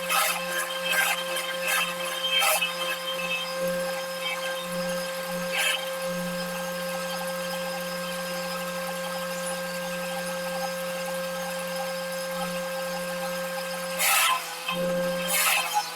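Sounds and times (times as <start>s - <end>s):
rasping cutting noise: 0.0s - 7.6s, 13.9s - 15.9s
woodworking machine motor humming: 0.0s - 8.2s, 13.8s - 15.9s.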